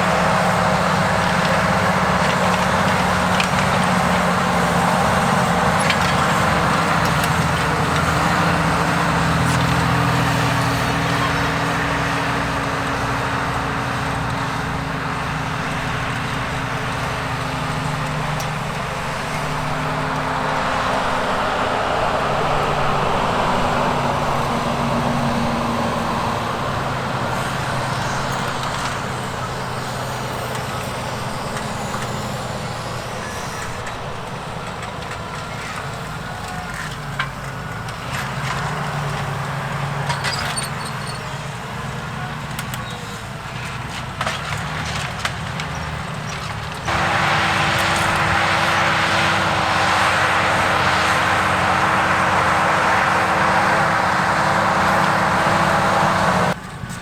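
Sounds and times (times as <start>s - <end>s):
higher engine tone: 0.0s - 37.2s, 46.8s - 56.6s
tractor diesel engine running: 0.0s - 57.0s.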